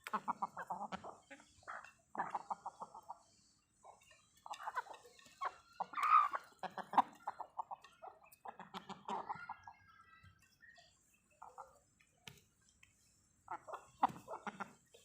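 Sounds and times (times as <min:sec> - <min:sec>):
chickens clucking: 0:00.0 - 0:15.0
drawn-out chicken call: 0:04.5 - 0:07.7.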